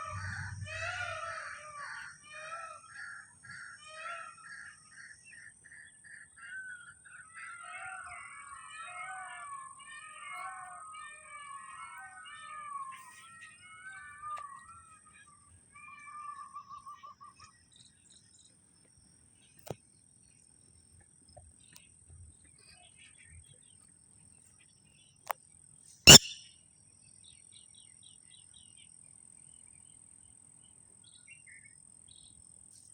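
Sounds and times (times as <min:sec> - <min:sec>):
lapwing calling: 0:26.1 - 0:26.4.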